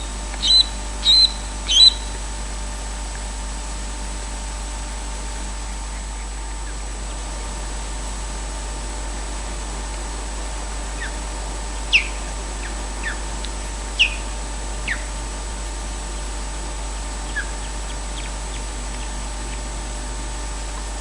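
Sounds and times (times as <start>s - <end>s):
osprey whistling calls: 0.0s - 2.2s, 11.8s - 15.2s, 17.2s - 19.7s.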